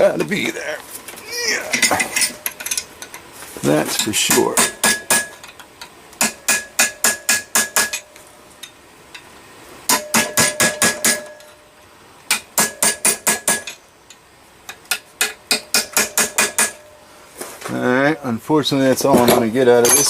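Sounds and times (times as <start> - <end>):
hammer striking chisel on metal: 4.3 - 5.5, 6.2 - 8.1, 9.9 - 11.5, 12.3 - 13.8, 14.8 - 17.0.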